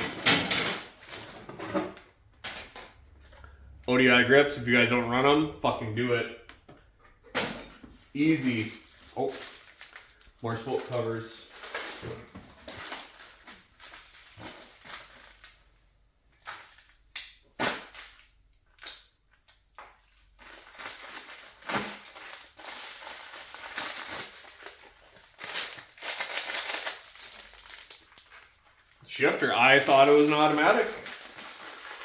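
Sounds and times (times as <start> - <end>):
packaging crinkling: 8.1 - 15.9, 20.2 - 32.0.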